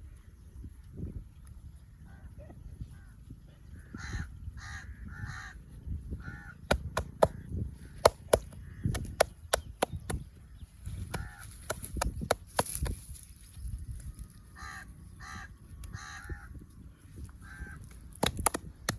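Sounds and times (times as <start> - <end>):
crows cawing: 3.0 - 9.2, 11.1 - 11.9, 14.5 - 16.6, 17.4 - 18.0
hands slapping and clapping: 6.7 - 7.4, 8.0 - 10.3, 11.0 - 13.1, 18.1 - 18.9.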